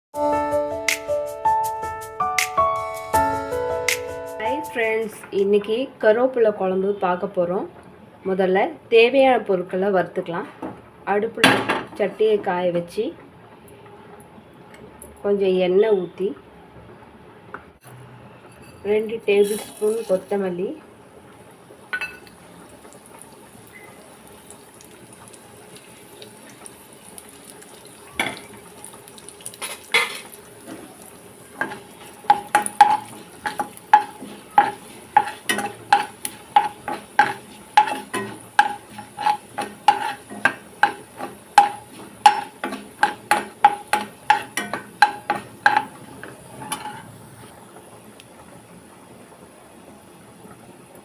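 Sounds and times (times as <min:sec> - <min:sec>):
spoon scraping a pan: 0:18.5 - 0:20.2, 0:29.6 - 0:30.9, 0:31.6 - 0:47.2
seeds roasting in oil: 0:19.0 - 0:51.0.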